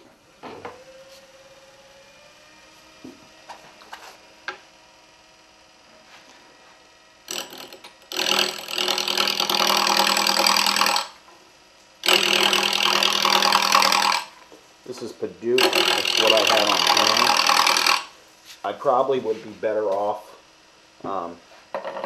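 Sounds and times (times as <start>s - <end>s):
wood lathe hum: 0.0s - 19.4s, 20.3s - 22.0s
turning tool cutting wood: 7.3s - 11.3s, 12.0s - 18.2s, 21.7s - 22.0s.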